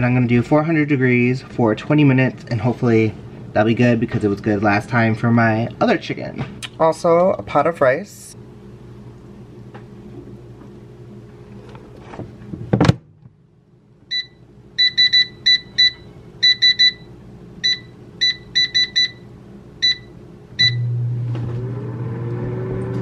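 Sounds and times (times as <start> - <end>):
control panel short beeps: 14.1 - 19.2, 19.8 - 20.9.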